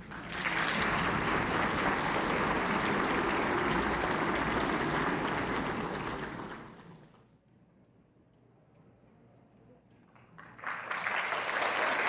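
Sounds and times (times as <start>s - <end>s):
audience applauding: 0.0s - 7.2s, 10.2s - 12.0s.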